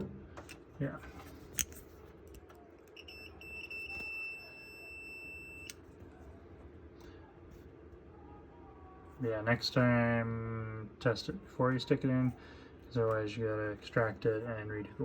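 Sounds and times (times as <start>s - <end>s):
multimeter beeping: 2.9s - 5.9s.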